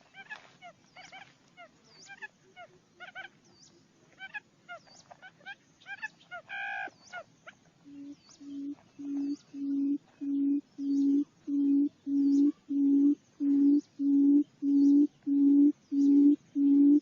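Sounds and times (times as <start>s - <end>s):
small birds chirping: 0.0s - 17.0s
nasal bird call: 7.9s - 17.0s.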